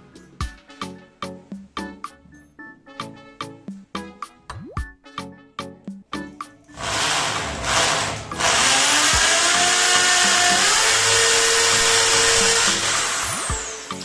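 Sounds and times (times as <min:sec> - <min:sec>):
cordless drill boring into wall: 0:06.7 - 0:14.0.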